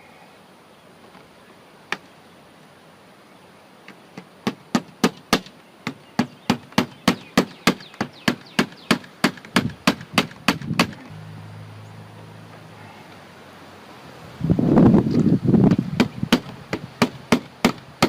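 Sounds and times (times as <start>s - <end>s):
hammer driving a nail: 4.4s - 11.1s, 15.7s - 18.0s.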